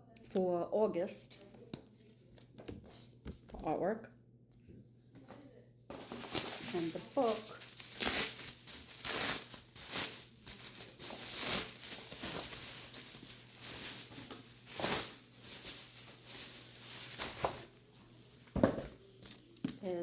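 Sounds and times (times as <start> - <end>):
paper and packaging crinkling: 5.9 - 20.0.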